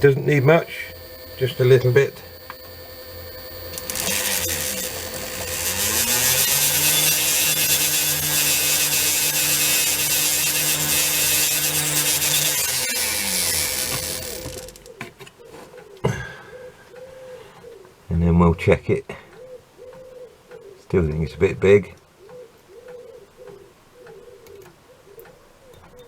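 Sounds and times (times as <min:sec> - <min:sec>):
small lathe motor running: 0:00.0 - 0:15.0
stone rubbing on spinning rod: 0:00.9 - 0:15.0.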